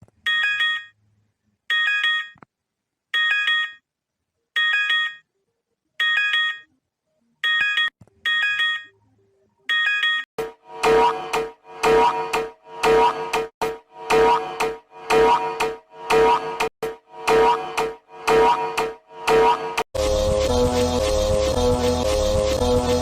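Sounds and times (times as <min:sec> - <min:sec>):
electronic alarm beeping: 0:09.7 - 0:20.3.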